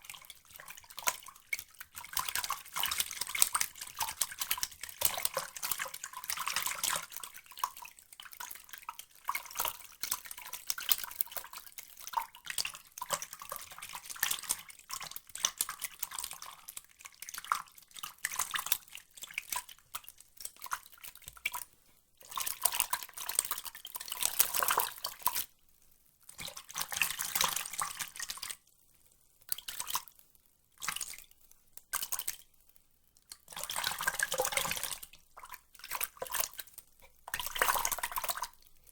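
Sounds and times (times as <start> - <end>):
water dripping and splashing: 0.1 - 25.5, 26.3 - 28.7, 29.5 - 30.2, 30.8 - 32.5, 33.2 - 38.9.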